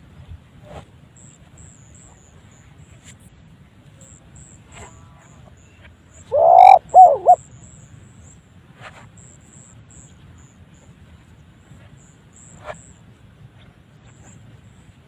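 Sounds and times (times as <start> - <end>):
dove cooing: 6.3 - 7.4.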